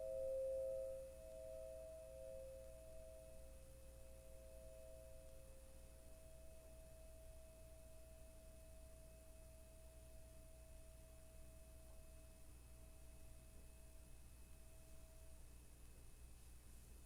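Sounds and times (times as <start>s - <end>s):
singing bowl ringing: 0.0s - 12.2s.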